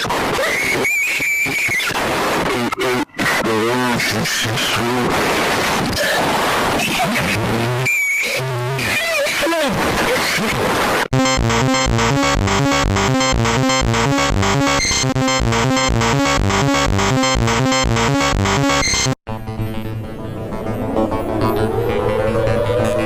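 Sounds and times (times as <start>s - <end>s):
electronic alarm tones: 11.1s - 19.2s.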